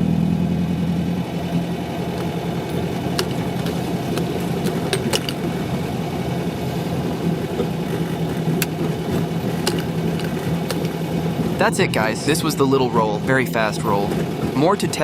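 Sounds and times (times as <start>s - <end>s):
car engine running: 0.0s - 15.0s
sharp clicks: 1.5s - 11.0s.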